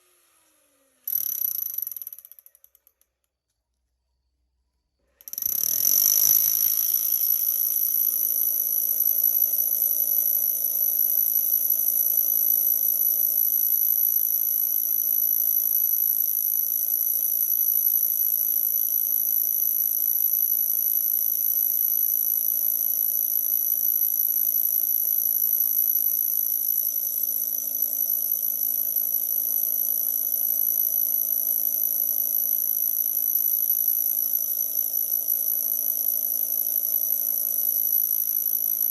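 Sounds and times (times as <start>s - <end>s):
electric drill whining: 5.2s - 11.9s.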